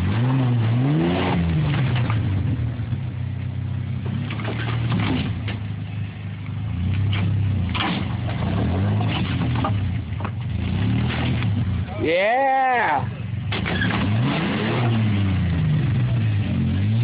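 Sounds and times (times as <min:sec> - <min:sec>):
pickup truck engine revving: 0:00.0 - 0:17.0.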